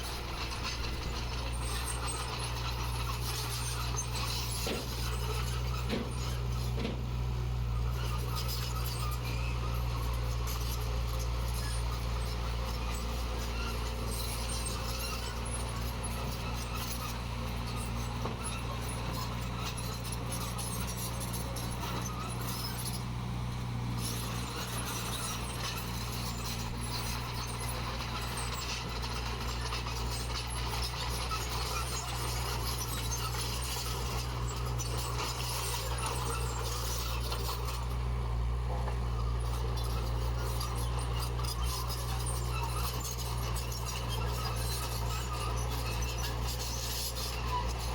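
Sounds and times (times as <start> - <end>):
diesel machinery engine hum: 0.0 - 47.9
gravel scraping and clinking: 0.0 - 47.9.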